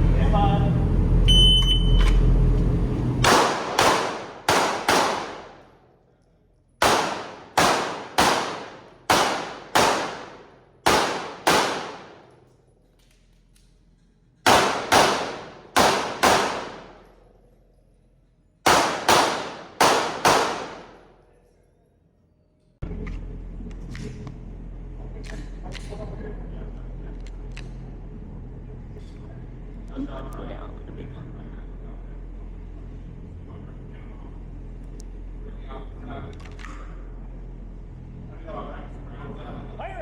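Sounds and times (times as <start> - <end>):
shot timer beep: 1.3 - 2.1
pistol firing rapid shots: 3.2 - 5.6, 6.8 - 12.3, 14.5 - 17.0, 18.7 - 21.0.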